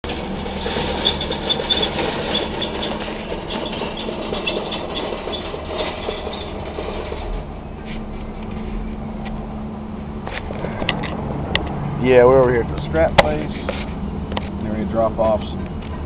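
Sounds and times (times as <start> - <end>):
metallic rattling: 0.0 - 8.7
engine running: 0.0 - 16.0.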